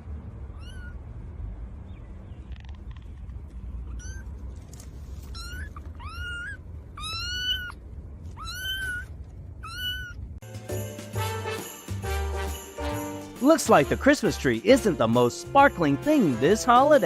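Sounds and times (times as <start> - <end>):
cat meowing: 0.5 - 1.0, 3.9 - 4.4, 5.2 - 10.3.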